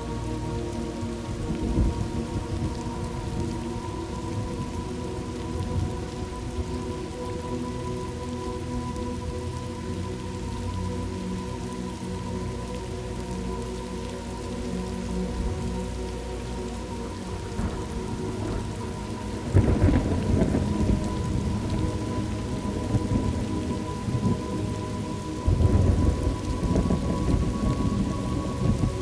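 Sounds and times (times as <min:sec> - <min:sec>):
steady rain: 0:00.0 - 0:29.0
thunder rumbling: 0:01.3 - 0:04.8, 0:17.4 - 0:29.0.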